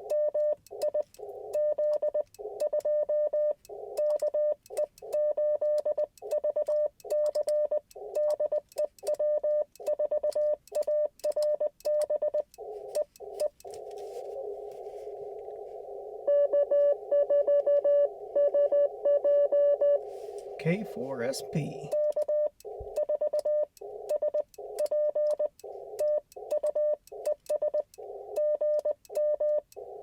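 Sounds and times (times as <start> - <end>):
morse code beeping tone: 16.2 - 27.8
louder morse code tone: 16.3 - 22.5.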